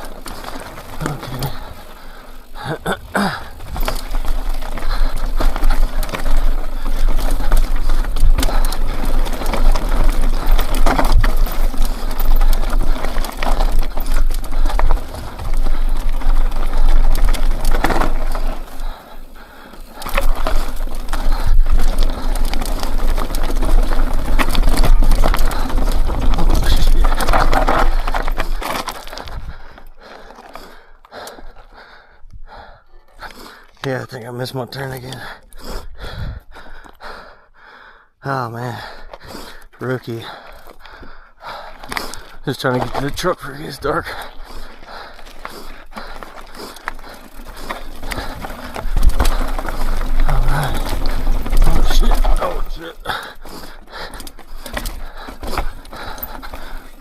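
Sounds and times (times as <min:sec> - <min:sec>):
mountain bike clattering over rock: 0:00.0 - 0:31.7, 0:39.0 - 0:57.0
tyres crunching: 0:00.0 - 0:31.7, 0:39.0 - 0:57.0
chain and frame rattling: 0:03.3 - 0:19.2, 0:19.9 - 0:29.5, 0:41.9 - 0:57.0.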